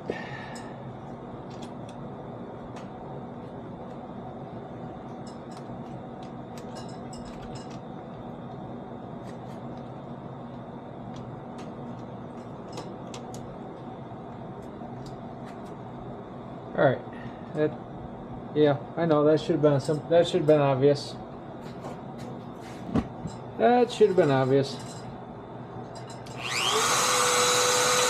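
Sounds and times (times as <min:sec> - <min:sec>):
steady mechanical hum: 0:00.0 - 0:28.0.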